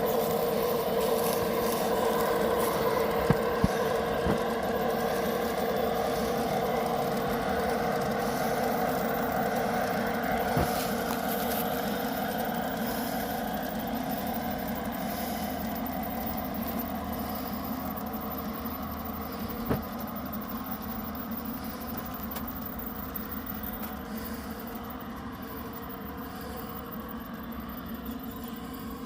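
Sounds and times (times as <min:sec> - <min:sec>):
model train motor whirring: 0:00.0 - 0:29.0
wheels on rails: 0:00.0 - 0:29.0.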